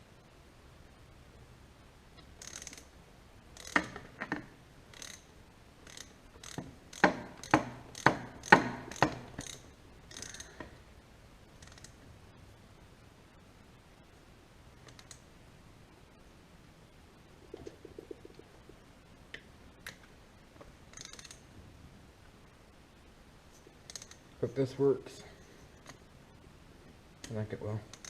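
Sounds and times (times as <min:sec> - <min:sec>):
ratchet wrench clicking: 0:02.4 - 0:02.9, 0:03.6 - 0:04.0, 0:04.9 - 0:10.6, 0:11.6 - 0:12.0, 0:14.9 - 0:15.2, 0:20.9 - 0:21.4, 0:23.9 - 0:24.2.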